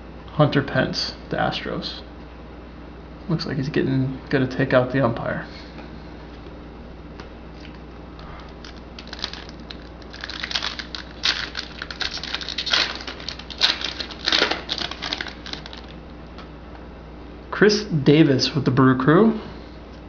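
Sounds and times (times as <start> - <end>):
cards being handled: 8.4 - 16.0
wrapper being torn and crinkled: 8.4 - 16.0.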